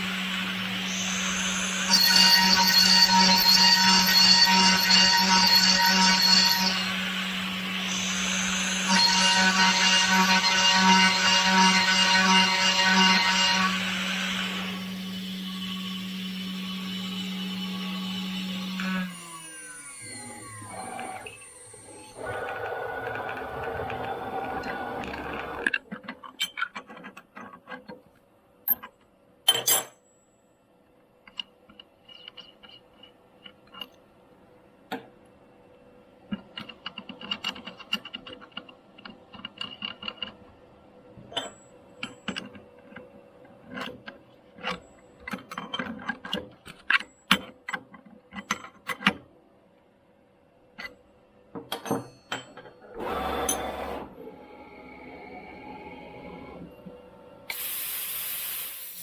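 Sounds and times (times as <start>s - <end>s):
milling machine hum: 0.0s - 25.7s
burst of hiss: 57.5s - 59.0s.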